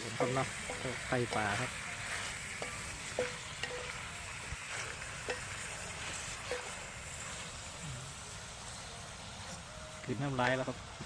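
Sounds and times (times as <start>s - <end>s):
food sizzling in a pan: 0.0s - 11.0s
metal utensil knocking on pan: 0.2s - 1.5s, 2.6s - 4.0s, 5.2s - 5.5s.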